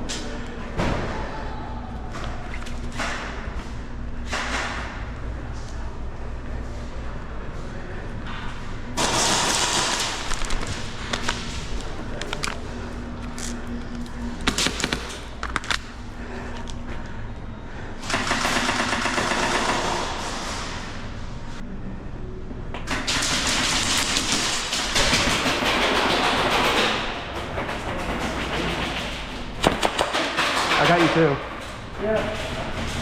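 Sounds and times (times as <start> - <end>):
airsoft guns firing bursts: 9.0 - 11.3, 14.4 - 15.7, 18.0 - 20.5.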